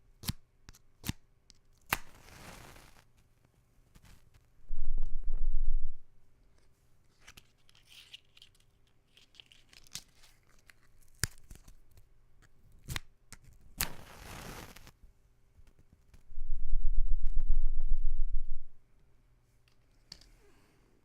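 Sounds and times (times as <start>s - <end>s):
match flaring hiss: 2.0s - 3.0s, 13.8s - 15.0s
match striking rasps: 13.8s - 14.9s.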